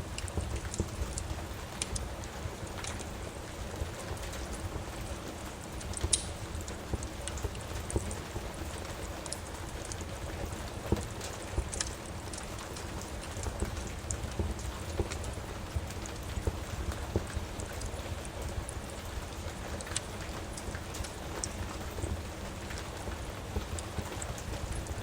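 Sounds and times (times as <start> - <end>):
steady rain: 0.0 - 25.0
wood fire crackling: 0.0 - 25.0.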